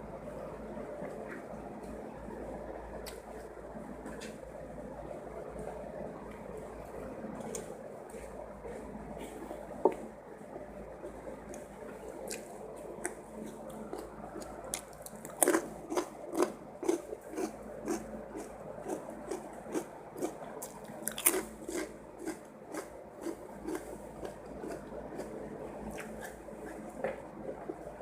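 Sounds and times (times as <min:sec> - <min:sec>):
wet chewing: 0:11.5 - 0:27.2.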